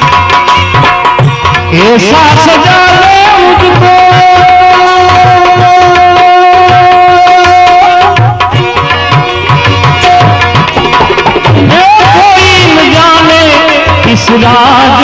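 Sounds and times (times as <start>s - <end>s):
hand drum rhythm: 7.9s - 14.4s
melody instrument: 10.2s - 12.6s.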